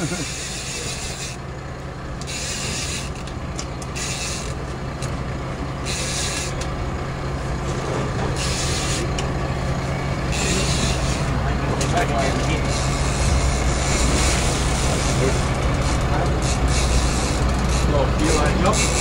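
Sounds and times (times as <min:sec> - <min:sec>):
fishing reel rasping: 0:00.0 - 0:01.4, 0:02.2 - 0:03.3, 0:03.9 - 0:05.1, 0:05.8 - 0:06.7, 0:08.3 - 0:09.2, 0:10.3 - 0:19.0
low hum: 0:12.5 - 0:17.9.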